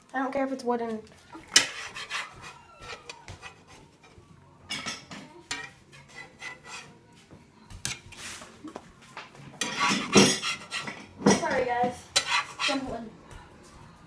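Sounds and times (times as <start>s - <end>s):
kitchen utensils clinking and scraping: 0.8s - 7.0s, 7.8s - 8.7s, 9.6s - 13.1s.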